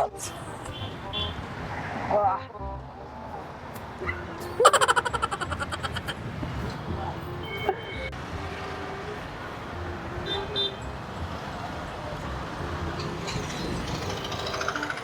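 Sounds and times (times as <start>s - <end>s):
car horns honking: 0.0s - 1.7s, 4.0s - 12.2s
passing vehicles rumbling: 0.0s - 15.0s.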